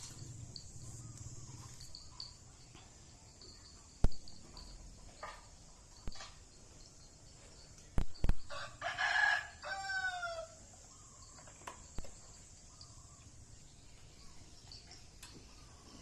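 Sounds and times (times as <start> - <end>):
rooster crowing: 8.5 - 10.6.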